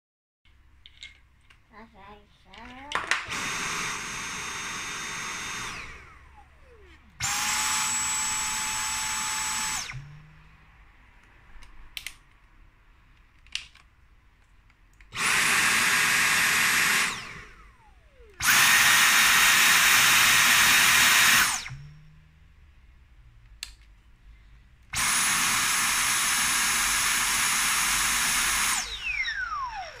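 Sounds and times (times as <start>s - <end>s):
vacuum cleaner suction whine: 3.2s - 10.4s, 15.1s - 22.0s, 24.9s - 30.0s
vacuum motor spinning down: 3.3s - 10.3s, 15.2s - 22.1s, 25.0s - 30.0s.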